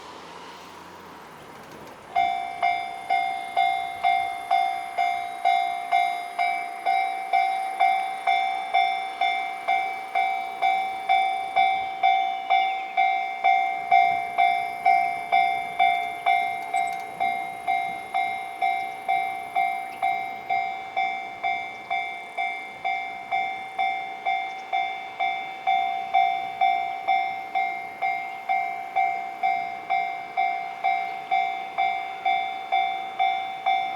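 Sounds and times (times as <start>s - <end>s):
level crossing warning bell: 1.7s - 33.9s.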